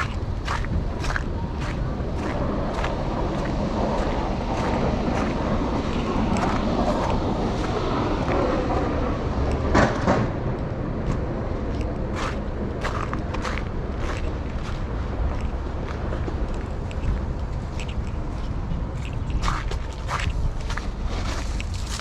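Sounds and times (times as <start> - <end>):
footsteps in snow: 19.4 - 22.0.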